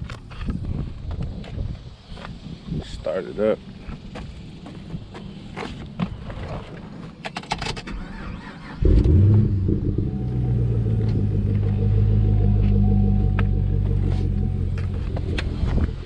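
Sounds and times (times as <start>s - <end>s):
engine starter clicks: 7.3s - 13.6s
car engine starting and idling: 7.3s - 16.0s.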